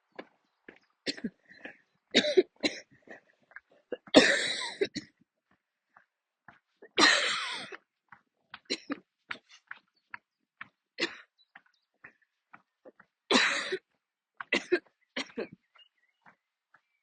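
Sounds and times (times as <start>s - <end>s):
woman coughing: 1.1s - 1.3s, 2.2s - 2.9s, 3.9s - 5.1s, 6.9s - 7.8s, 8.7s - 9.0s, 11.0s - 11.3s, 13.3s - 13.8s, 14.5s - 15.6s.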